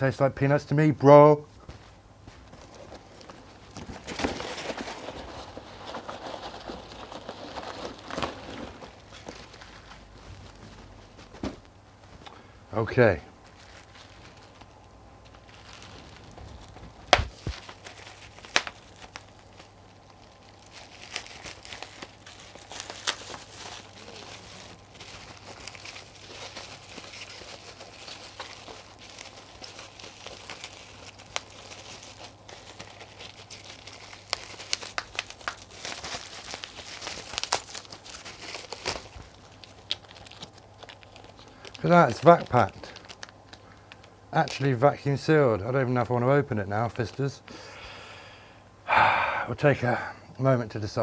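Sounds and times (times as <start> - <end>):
packaging crinkling and tearing: 2.4 - 11.5, 13.3 - 45.3.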